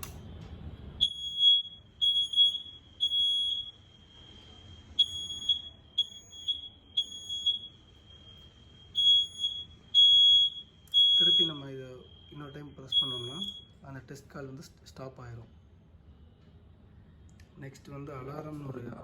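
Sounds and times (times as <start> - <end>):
fire alarm hooter tone: 1.0 - 13.8.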